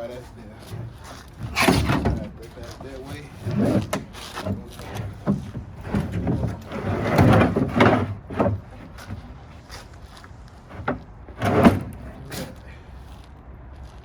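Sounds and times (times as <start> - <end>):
wooden drawer sliding and scraping: 0.2 - 12.6
drawer knocking against stops: 1.4 - 2.3, 10.7 - 12.5.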